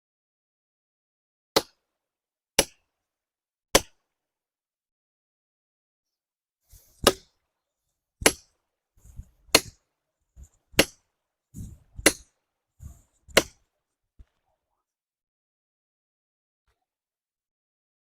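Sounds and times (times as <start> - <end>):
hammer striking metal wedge: 1.6 - 1.8, 2.6 - 2.9, 3.8 - 4.0, 7.0 - 7.3, 8.2 - 8.6, 9.5 - 9.8, 10.8 - 11.0, 12.0 - 12.3, 13.3 - 13.6.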